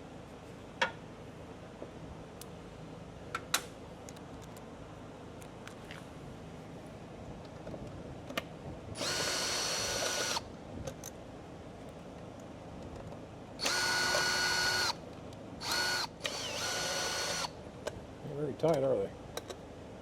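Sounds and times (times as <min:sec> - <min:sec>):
cordless drill whining: 0:09.0 - 0:10.4, 0:13.6 - 0:15.0, 0:15.6 - 0:17.5.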